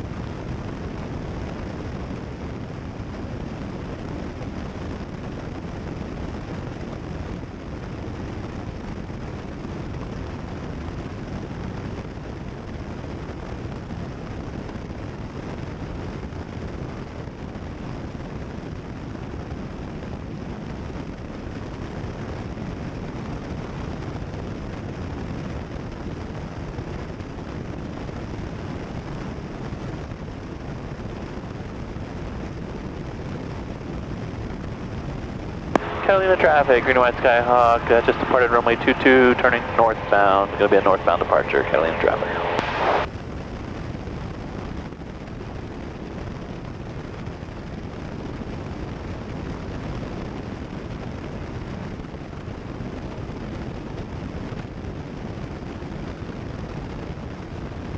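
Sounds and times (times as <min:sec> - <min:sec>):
airplane engine and propeller: 0:33.5 - 0:44.1.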